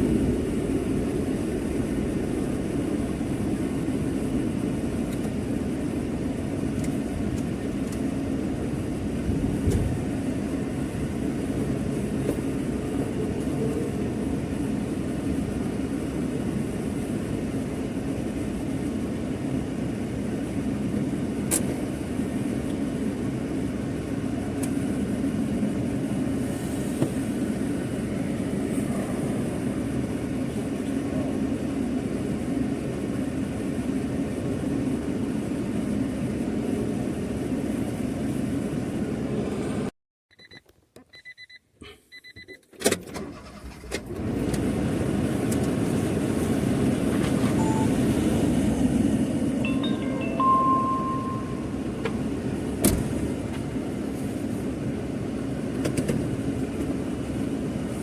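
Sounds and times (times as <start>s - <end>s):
car road and engine noise: 0.0s - 39.9s, 42.2s - 58.0s
faint beeps: 47.6s - 48.1s, 49.6s - 52.1s.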